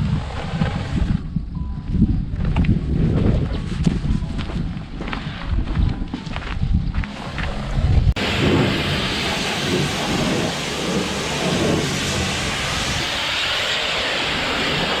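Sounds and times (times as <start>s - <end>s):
combine harvester running: 7.0s - 15.0s.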